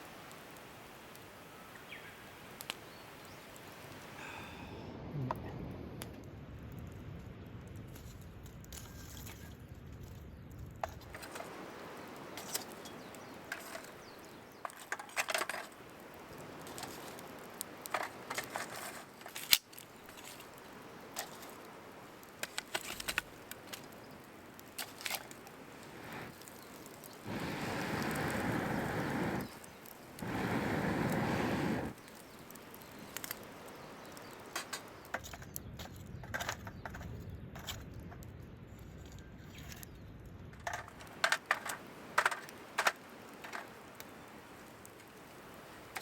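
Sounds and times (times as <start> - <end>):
cooking gear clicks and clinks: 10.8 - 27.2, 39.0 - 44.0.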